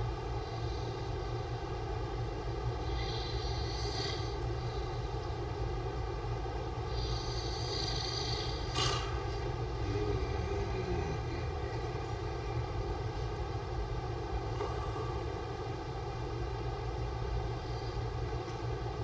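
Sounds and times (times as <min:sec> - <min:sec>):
steady droning hum: 0:00.0 - 0:19.0
man snoring: 0:09.8 - 0:11.9.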